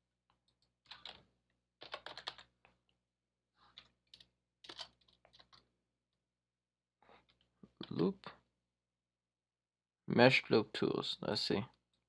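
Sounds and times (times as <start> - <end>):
faint typing on keyboard: 0.4 - 2.8, 3.6 - 5.7, 7.2 - 8.3.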